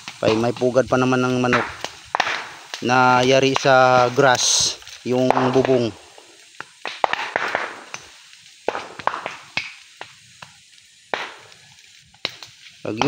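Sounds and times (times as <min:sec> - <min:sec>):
fire crackling: 0:00.0 - 0:13.0
sharp pops and cracks: 0:00.0 - 0:13.0.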